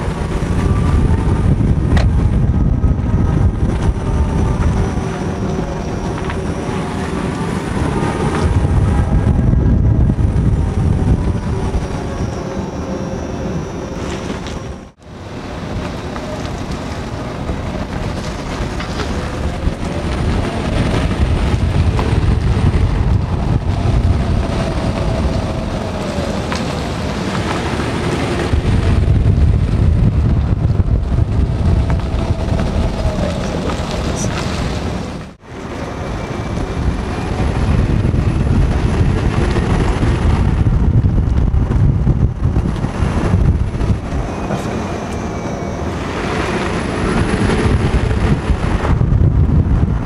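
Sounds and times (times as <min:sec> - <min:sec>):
thin high whine: 0:00.0 - 0:16.6, 0:42.9 - 0:48.8
pedestrian warning sound gliding: 0:00.0 - 0:49.2
road and tyre rumble: 0:00.0 - 0:50.0.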